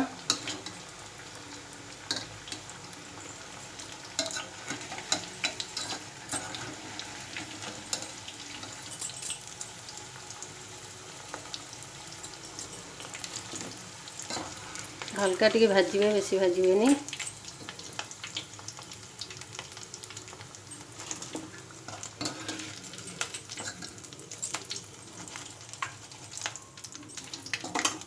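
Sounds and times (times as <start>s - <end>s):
potatoes sizzling in oil: 0.0s - 28.0s
spatula scraping pan: 21.0s - 23.8s.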